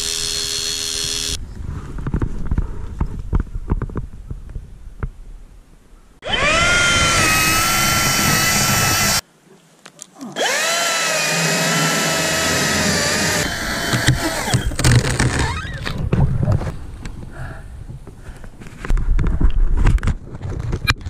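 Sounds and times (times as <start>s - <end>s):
chainsaw at full throttle: 6.2s - 9.2s, 10.4s - 14.9s.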